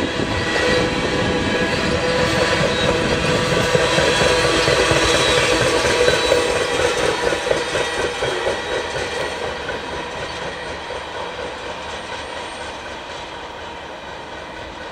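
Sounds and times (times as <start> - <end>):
freight cars rolling on rails: 0.0 - 14.9.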